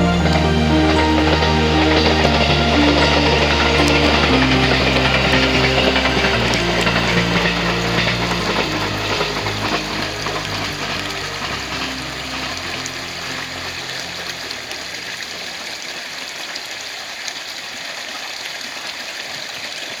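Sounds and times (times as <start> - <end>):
electric train motor hum: 0.0 - 15.9.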